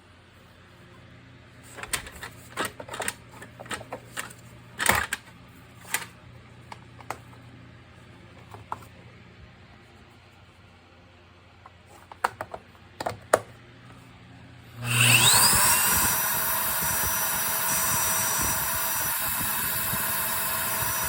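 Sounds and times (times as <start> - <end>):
plastic parts clicking and knocking: 1.7 - 7.3, 11.9 - 13.6.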